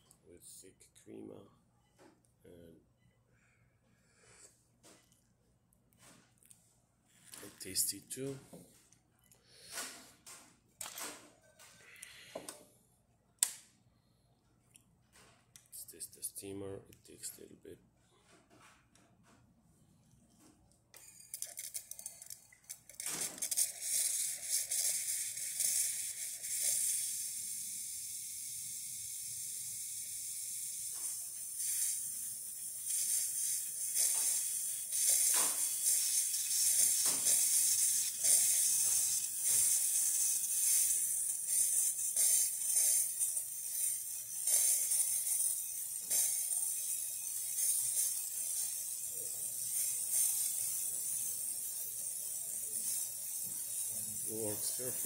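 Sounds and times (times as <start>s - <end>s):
steam wand hissing: 23.3s - 55.0s.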